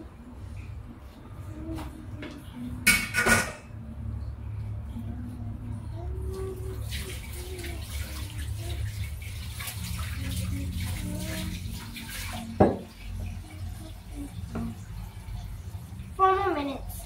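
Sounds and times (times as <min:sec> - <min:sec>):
liquid sloshing in a pot: 0:06.4 - 0:16.2.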